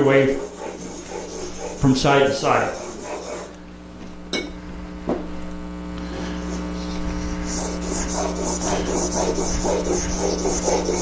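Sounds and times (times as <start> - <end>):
chisel rubbing on water stone: 0.0 - 3.6, 6.8 - 11.0
electrical hum: 0.0 - 11.0.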